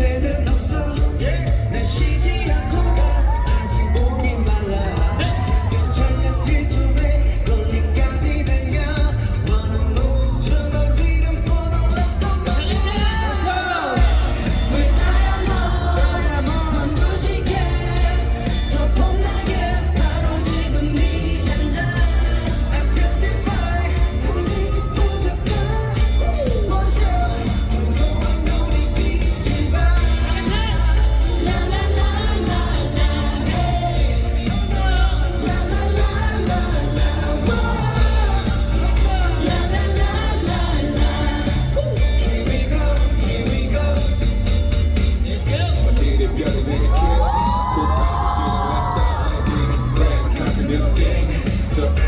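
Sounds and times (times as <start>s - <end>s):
heavy bass and drum beat: 0.0s - 52.0s
male group singing live pop: 0.0s - 52.0s.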